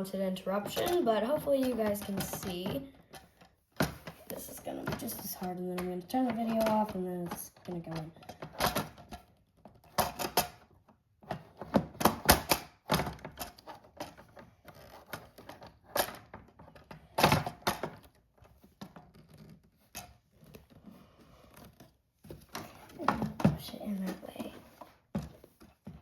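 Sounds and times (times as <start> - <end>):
plastic toy parts clacking: 0.6 - 18.2.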